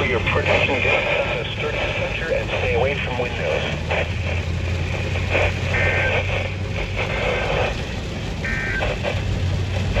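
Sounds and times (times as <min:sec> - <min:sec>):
radio hiss and hum: 0:00.0 - 0:10.0.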